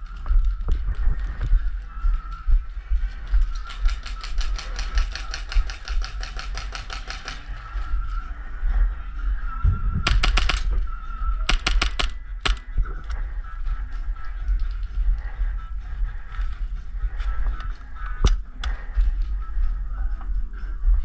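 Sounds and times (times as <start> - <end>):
airsoft guns firing: 3.7 - 7.6, 10.1 - 10.8, 11.5 - 12.6.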